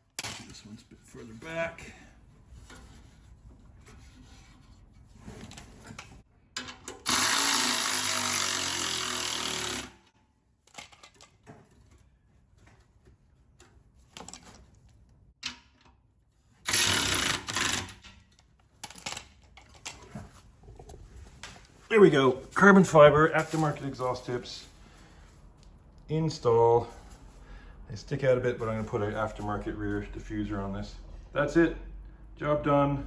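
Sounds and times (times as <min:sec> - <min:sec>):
electric power ratchet running: 0:07.0 - 0:10.1, 0:16.7 - 0:18.0.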